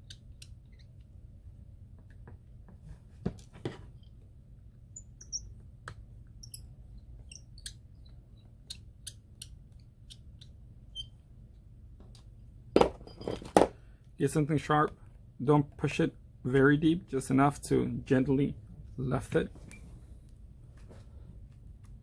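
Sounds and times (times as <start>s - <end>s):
high squeaky screw ticks: 0.0s - 1.1s, 5.0s - 5.5s, 6.4s - 11.2s.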